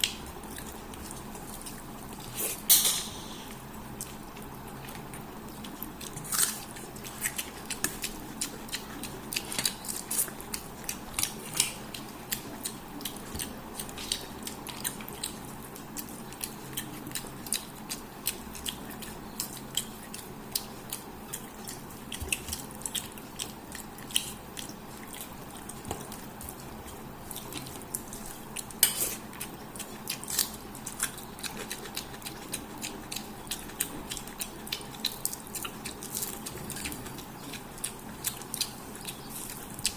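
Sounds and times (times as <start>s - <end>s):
chewing and mouth sounds: 0.0s - 39.9s.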